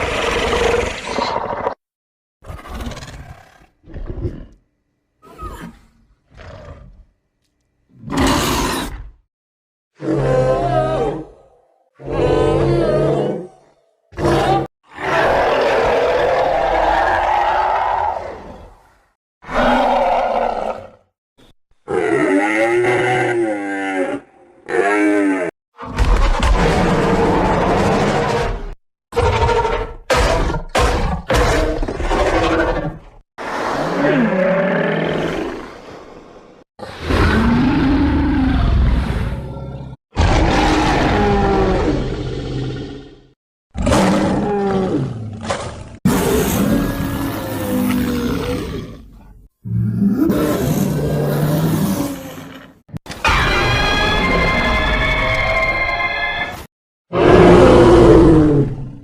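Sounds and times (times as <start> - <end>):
dinosaur roar: 10.0 - 13.6, 14.2 - 21.1, 21.9 - 36.0, 36.8 - 55.3, 57.1 - 59.0.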